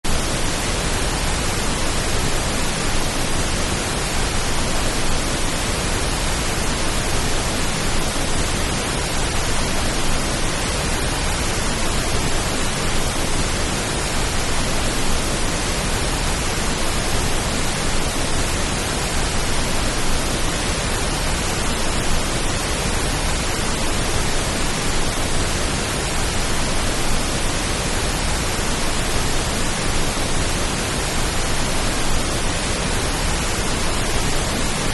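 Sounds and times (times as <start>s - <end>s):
steady pink noise hiss: 0.0s - 34.9s.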